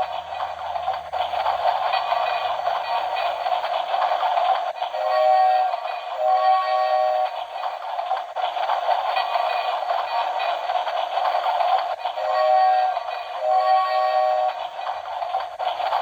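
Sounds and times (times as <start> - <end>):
steam train chugging hiss: 0.0 - 16.0
train whistle blowing: 5.0 - 7.3, 12.2 - 14.6.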